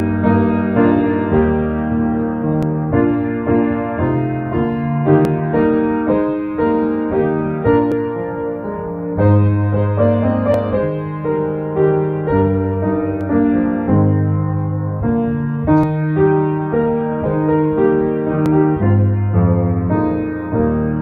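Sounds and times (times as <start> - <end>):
slow gentle piano piece: 0.0 - 21.0.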